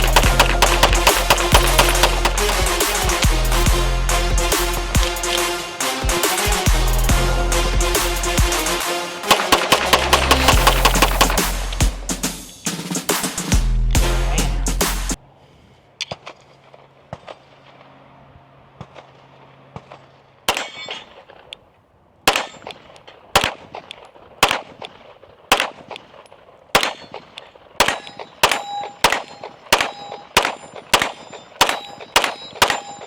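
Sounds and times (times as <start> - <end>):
pistol shots: 0.0 - 3.7, 8.8 - 12.0, 18.8 - 21.5, 22.3 - 33.0
metallic ring of steel target: 27.8 - 33.0.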